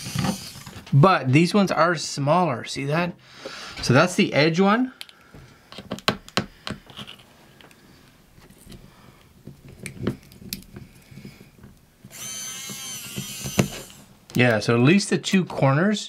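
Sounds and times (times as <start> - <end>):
screws and screwdriver clicking: 12.1 - 14.0.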